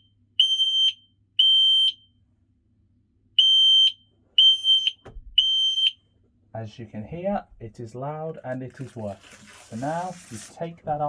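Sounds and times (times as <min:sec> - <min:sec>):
smoke alarm beeping: 0:00.0 - 0:02.1, 0:03.4 - 0:06.0.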